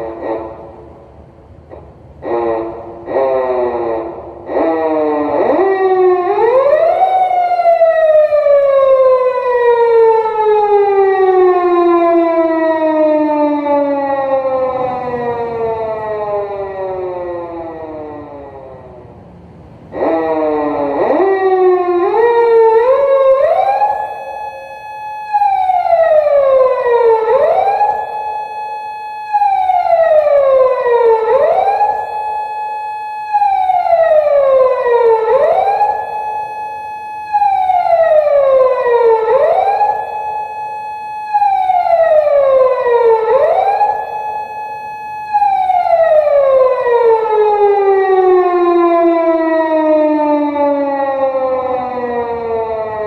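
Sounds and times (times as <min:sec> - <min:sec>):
police car siren wailing: 0:00.0 - 0:01.1, 0:01.7 - 0:53.0.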